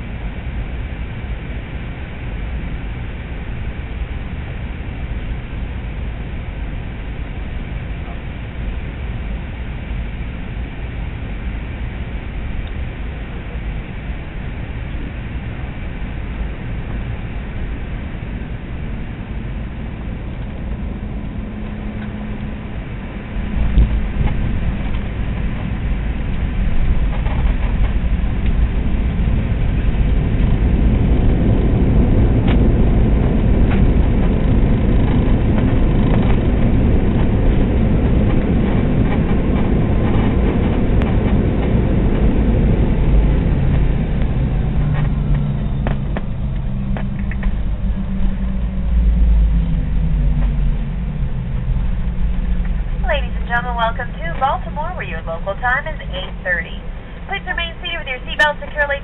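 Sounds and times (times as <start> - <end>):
airplane engine hum: 0.0 - 59.0
plane roaring on runway: 0.0 - 59.0
wheels touching down rumble: 18.3 - 53.5.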